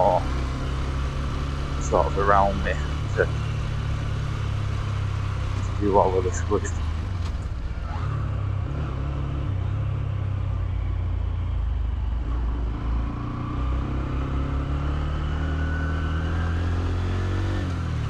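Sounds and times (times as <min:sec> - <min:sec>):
motorcycle engine running: 0:00.0 - 0:07.8.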